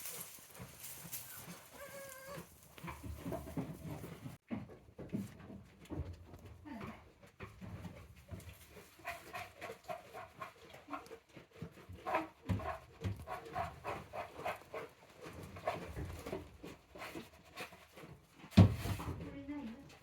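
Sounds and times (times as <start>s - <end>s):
goat kids bleating softly: 0.0s - 3.1s
goats panting: 0.0s - 4.4s, 8.0s - 18.2s.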